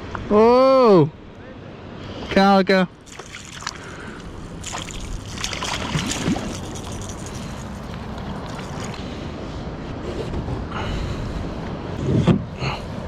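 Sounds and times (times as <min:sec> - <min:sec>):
brief splashes and knocks: 0:03.0 - 0:09.1
water sloshing around a kayak: 0:03.0 - 0:09.4.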